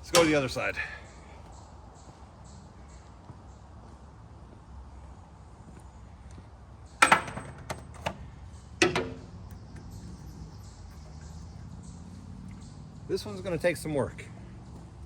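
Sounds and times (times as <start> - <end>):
metal tools clanking: 8.8 - 10.4.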